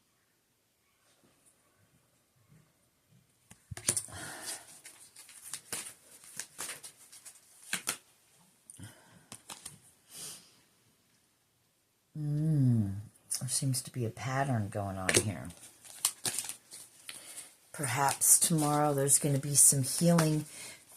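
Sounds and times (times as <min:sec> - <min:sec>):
cards being shuffled: 0:03.5 - 0:08.1, 0:09.3 - 0:09.9, 0:15.0 - 0:20.9.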